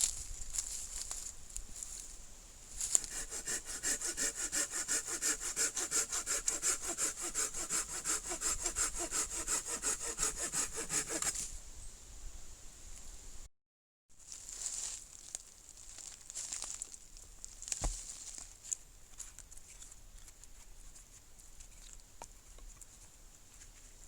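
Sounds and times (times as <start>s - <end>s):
saw cutting through wood: 2.8s - 11.4s.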